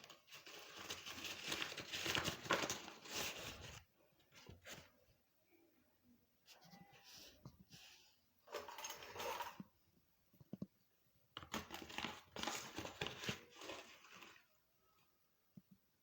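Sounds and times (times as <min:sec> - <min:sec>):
rustling and scraping handling noises: 0:00.0 - 0:05.1, 0:06.4 - 0:09.7, 0:11.4 - 0:14.6.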